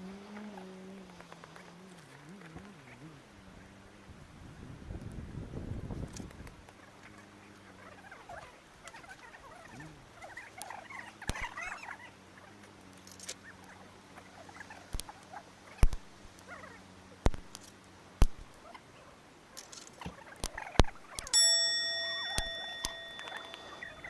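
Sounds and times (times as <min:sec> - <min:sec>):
squeaks and hisses from burning wood: 0:06.2 - 0:21.4
campfire crackling and popping: 0:10.5 - 0:11.7, 0:14.8 - 0:16.6, 0:17.2 - 0:18.8, 0:19.4 - 0:24.0.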